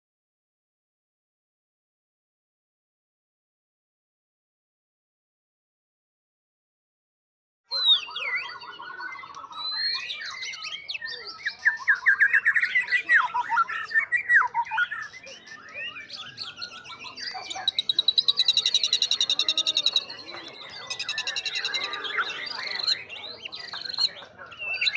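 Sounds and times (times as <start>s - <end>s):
songbird singing whistles and trills: 7.7s - 24.9s.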